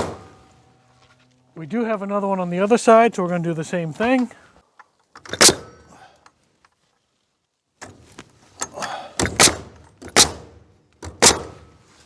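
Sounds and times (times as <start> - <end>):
nail gun firing into wood: 0.0 - 0.4, 5.2 - 5.8, 8.7 - 11.7.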